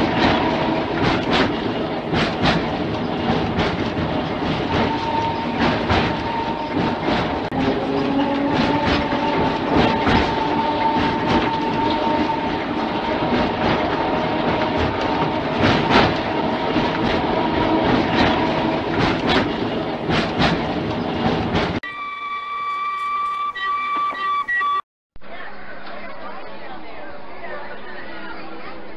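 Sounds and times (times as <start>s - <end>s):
wheels clattering over rail joints: 0.0s - 21.9s
tram rumbling with whine: 0.0s - 28.9s.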